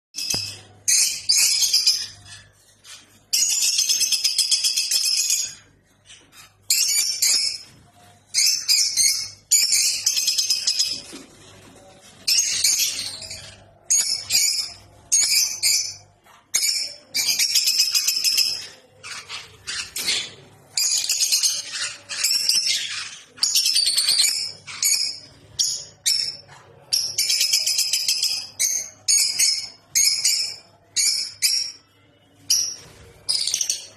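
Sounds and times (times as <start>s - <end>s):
parrots chattering and screeching: 0.2s - 33.9s.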